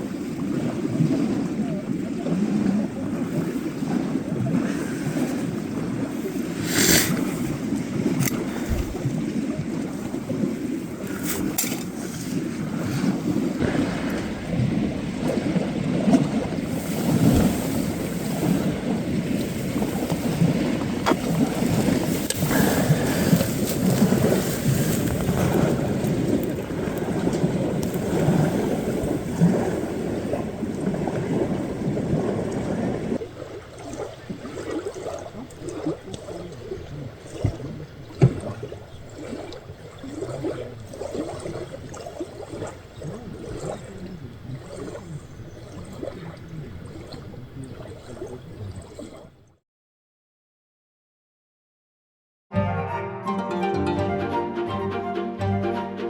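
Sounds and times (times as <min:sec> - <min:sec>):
wind noise on microphone: 0:00.0 - 0:33.4
water splashing and lapping: 0:00.0 - 0:49.6.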